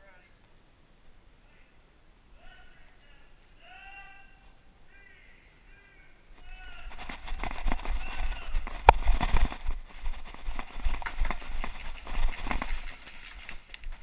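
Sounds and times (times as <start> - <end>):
running footsteps: 6.4 - 14.0.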